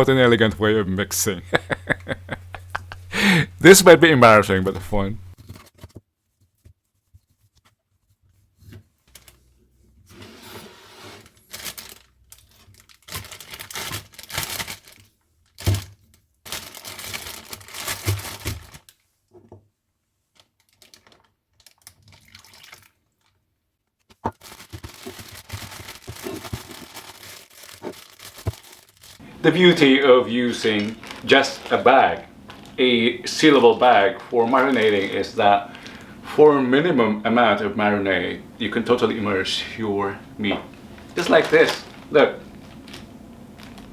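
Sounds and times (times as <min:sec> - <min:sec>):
plastic bag crinkling: 0:00.1 - 0:05.4, 0:11.3 - 0:15.8, 0:16.4 - 0:18.9, 0:20.4 - 0:23.4, 0:24.3 - 0:43.9.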